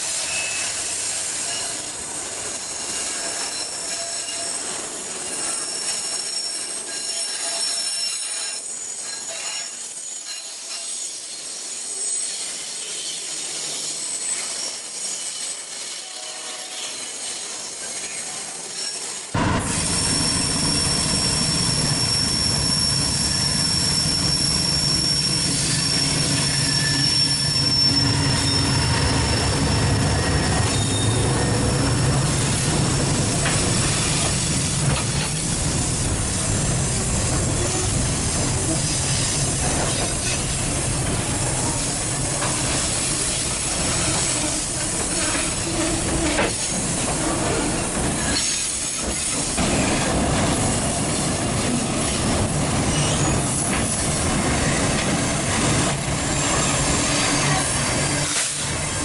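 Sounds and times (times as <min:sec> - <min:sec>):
train wheels squealing on rails: 0:00.0 - 0:59.0
low train rumble: 0:19.3 - 0:59.0.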